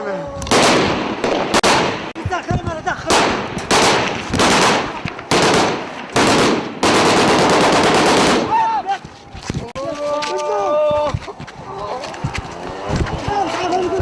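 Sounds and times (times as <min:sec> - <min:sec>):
automatic gunfire bursts: 0:00.5 - 0:02.1, 0:03.1 - 0:08.6
voices: 0:08.4 - 0:14.0.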